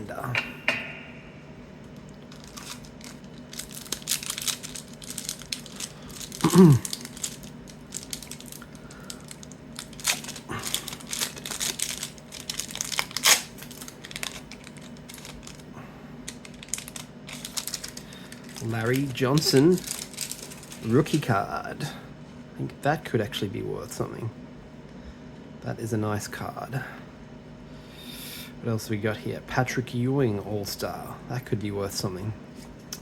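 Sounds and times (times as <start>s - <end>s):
wrapper crinkling and tearing: 2.1s - 21.3s
voice murmuring: 6.4s - 6.9s.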